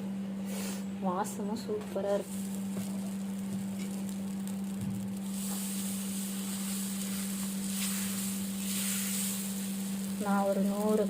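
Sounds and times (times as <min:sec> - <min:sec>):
constant low hum: 0:00.0 - 0:11.0
dosa sizzling on a griddle: 0:02.2 - 0:11.0.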